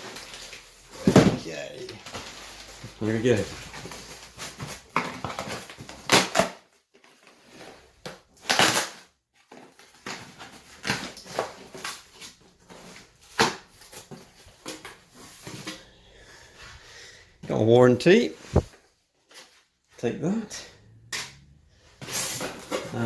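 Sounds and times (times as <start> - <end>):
rustling and scraping of cardboard: 2.0 - 6.3, 7.0 - 15.9, 21.8 - 23.0.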